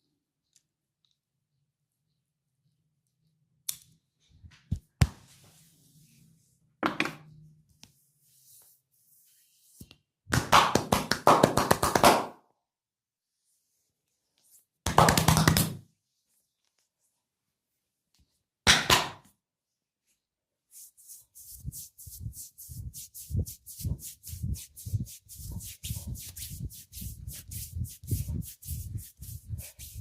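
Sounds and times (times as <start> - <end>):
percussive massage strokes: 20.7 - 30.0.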